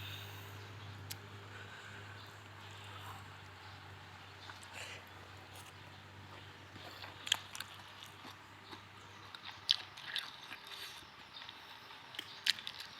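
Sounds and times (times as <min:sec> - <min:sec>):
person chewing crunchy food: 0:04.4 - 0:12.9.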